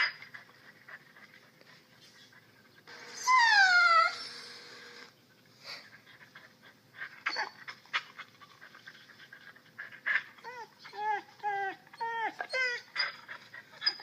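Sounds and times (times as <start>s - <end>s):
recorded dog whine from speaker: 2.9s - 5.1s, 10.1s - 14.0s.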